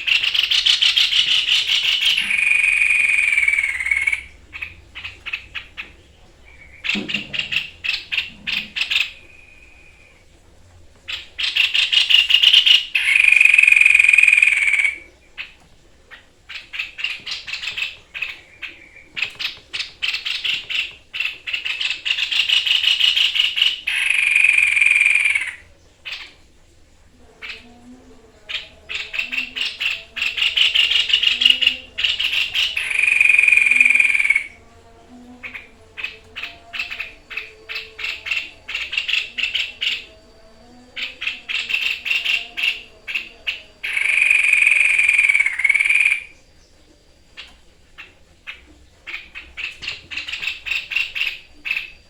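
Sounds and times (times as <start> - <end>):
bird rattling trills: 0.0 - 10.2, 11.0 - 15.6, 16.4 - 26.4, 28.5 - 34.6, 41.0 - 46.3.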